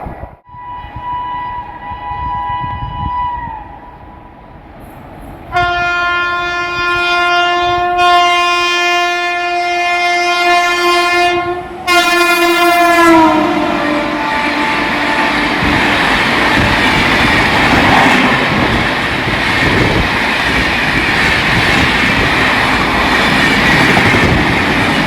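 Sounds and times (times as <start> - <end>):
train rumble: 0.0 - 25.0
locomotive horn: 0.5 - 4.3, 5.5 - 18.6.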